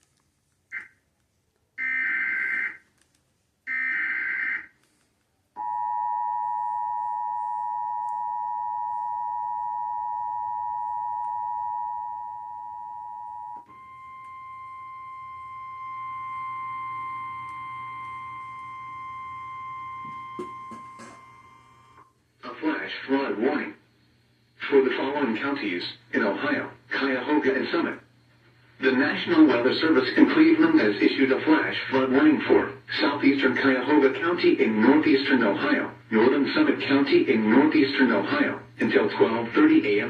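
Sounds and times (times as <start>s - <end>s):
single steady tone: 5.6s - 22.0s
two-tone attention signal: 5.6s - 22.0s.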